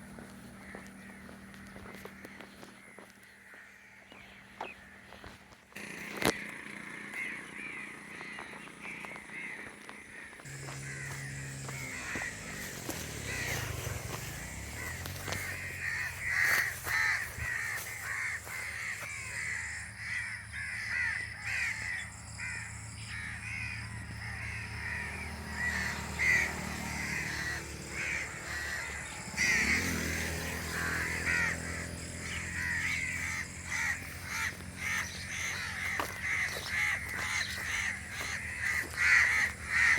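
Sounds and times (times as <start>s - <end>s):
crows cawing: 0.1s - 39.9s
low droning hum: 5.8s - 20.5s.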